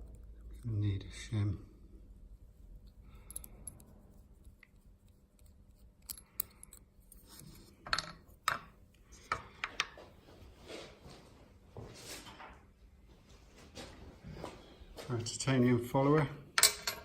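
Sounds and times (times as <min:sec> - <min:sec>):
metal lock parts clicking and scraping: 0:03.2 - 0:03.9, 0:05.4 - 0:08.7, 0:16.6 - 0:17.0.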